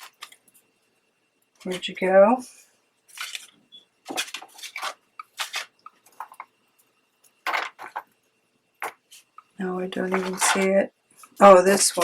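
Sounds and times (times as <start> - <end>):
craft supplies rummaged on table: 3.1 - 6.5, 7.4 - 8.1, 10.0 - 12.0.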